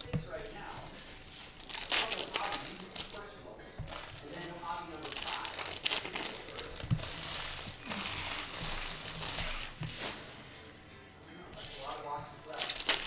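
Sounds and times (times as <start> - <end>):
soft handling thumps: 0.0 - 1.7, 2.5 - 10.8
foil wrappers torn and crinkled: 0.0 - 10.7, 11.6 - 13.0.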